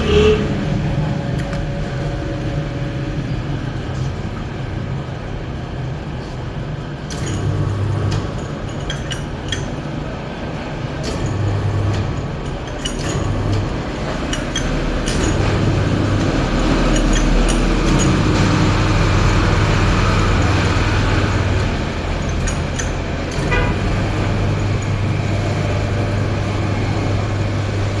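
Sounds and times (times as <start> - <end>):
engine and traffic noise: 0.0 - 28.0
honing machine motor hum: 6.8 - 28.0
sharp metallic clicks: 7.1 - 9.9, 11.0 - 19.3, 21.6 - 23.6.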